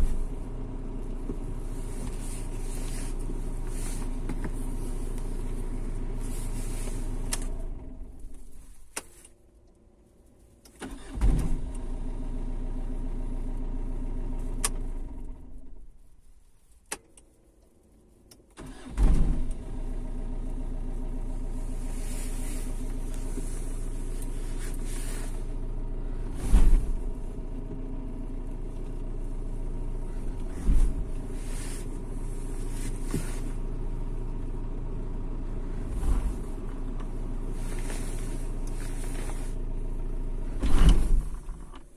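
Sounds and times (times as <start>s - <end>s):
diesel engine idling: 0.0s - 8.9s, 18.7s - 41.9s
engine starting: 10.8s - 11.8s, 18.6s - 19.6s, 40.6s - 41.9s
loud clunks: 40.6s - 41.9s.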